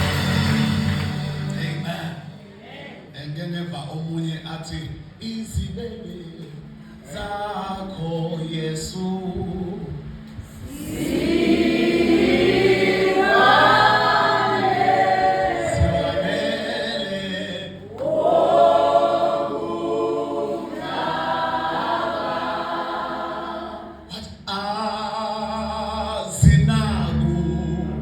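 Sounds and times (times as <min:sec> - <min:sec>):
choir singing gospel chorus: 0:00.0 - 0:01.8, 0:10.4 - 0:24.7.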